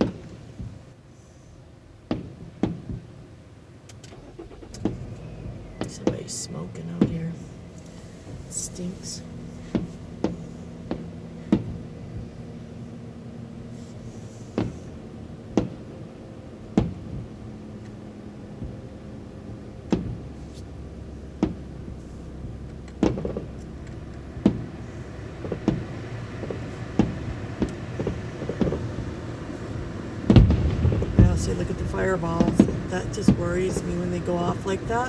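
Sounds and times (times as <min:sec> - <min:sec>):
steady low hum: 0:00.0 - 0:35.0
fireworks booming: 0:04.5 - 0:12.8, 0:15.5 - 0:35.0.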